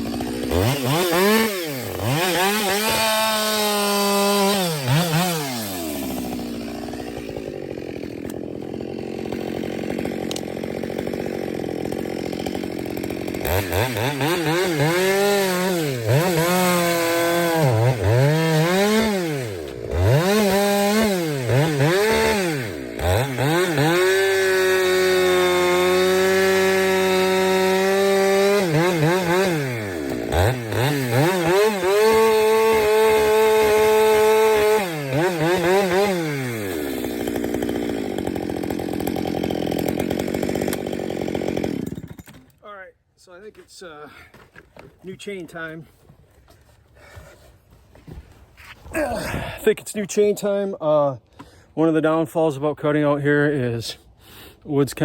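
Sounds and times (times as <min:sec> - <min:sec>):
chainsaw revving and cutting: 0:00.0 - 0:42.6.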